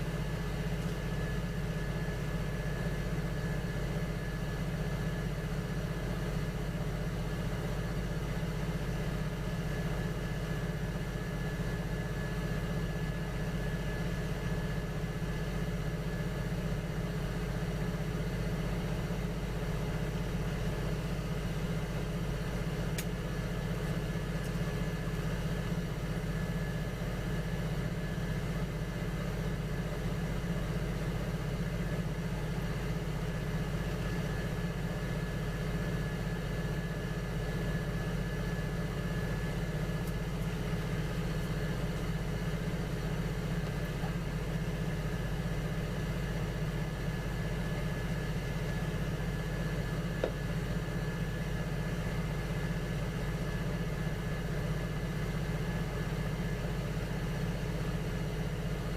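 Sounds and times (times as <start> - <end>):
potter's wheel motor hum: 0.0 - 58.9.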